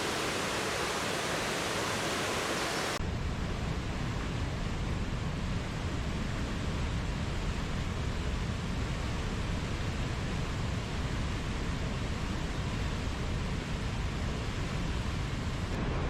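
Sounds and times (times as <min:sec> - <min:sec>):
flowing water: 0:00.0 - 0:03.0.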